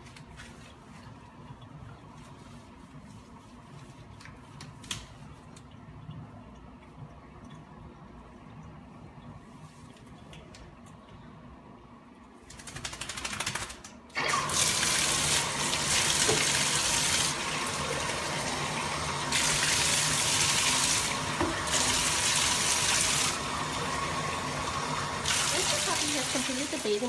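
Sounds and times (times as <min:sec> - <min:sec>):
tap water running: 0:14.2 - 0:27.0.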